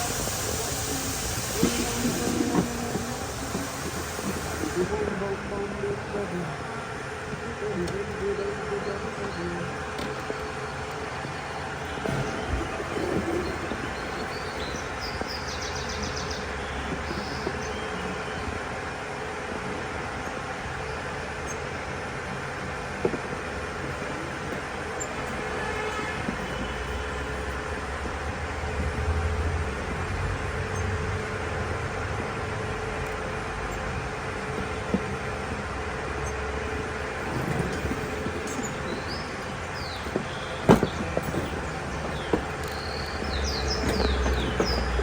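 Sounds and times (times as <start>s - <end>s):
car engine running: 6.1s - 17.8s, 26.6s - 45.0s
bird chirping: 11.8s - 18.4s, 38.4s - 45.0s.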